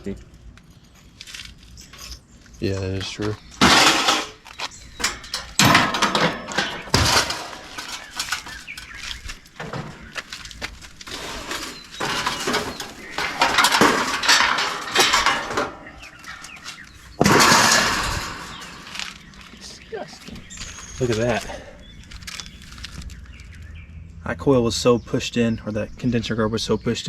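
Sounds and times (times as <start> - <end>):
sheet metal clattering and scraping: 3.0 - 22.5.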